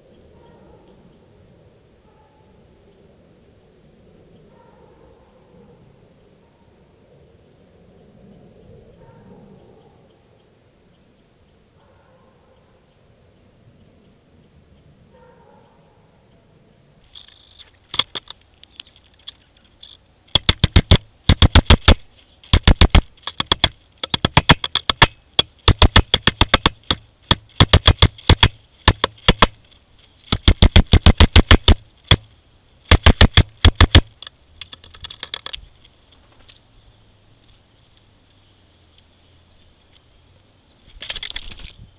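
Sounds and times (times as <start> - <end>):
woodpecker beak taps: 20.3 - 29.6, 30.3 - 32.3, 32.9 - 35.6.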